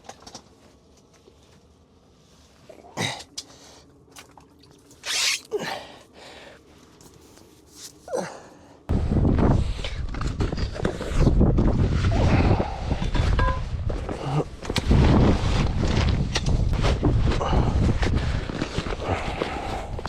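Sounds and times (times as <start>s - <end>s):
wind buffeting microphone: 8.9s - 20.0s.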